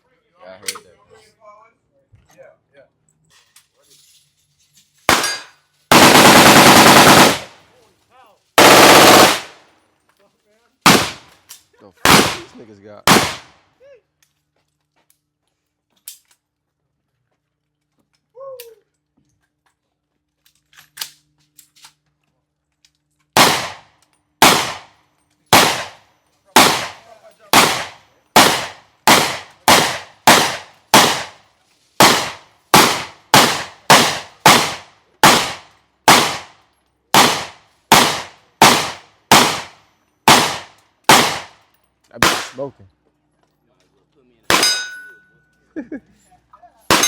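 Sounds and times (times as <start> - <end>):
semi-automatic gunshots: 5.1 - 7.6, 8.6 - 9.6, 10.8 - 11.3, 12.0 - 13.6, 23.4 - 24.9, 25.5 - 31.4, 32.0 - 41.6, 42.2 - 42.6, 44.5 - 45.1.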